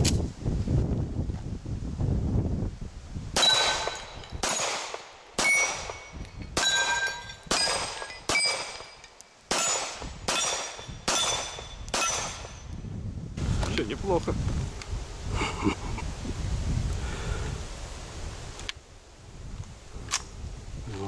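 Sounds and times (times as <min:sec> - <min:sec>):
gunshots: 0:03.4 - 0:12.6
steel target plate ringing: 0:03.4 - 0:12.7.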